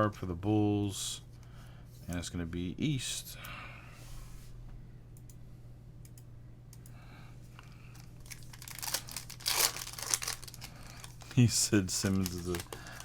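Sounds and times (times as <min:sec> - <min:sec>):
faint low hum: 0:00.0 - 0:13.0
foil wrapper crinkling and tearing: 0:07.9 - 0:13.0.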